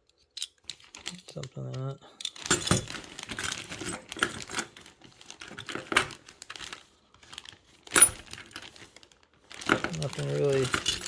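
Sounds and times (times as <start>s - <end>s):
bag crinkling: 2.4s - 11.0s.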